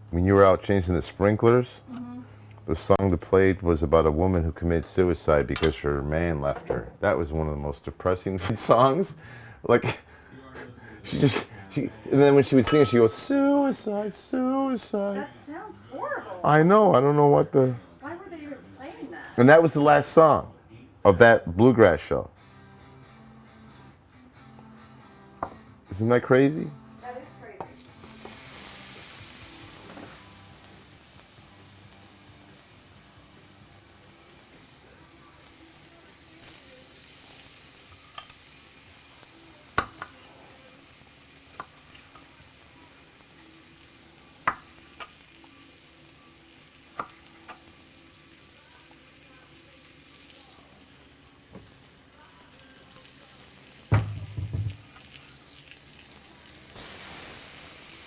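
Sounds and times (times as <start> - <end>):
food sizzling in a frying pan: 12.2 - 15.7, 27.7 - 58.0
utensils clicking against pan: 37.9 - 38.4
loud knock: 53.9 - 54.8.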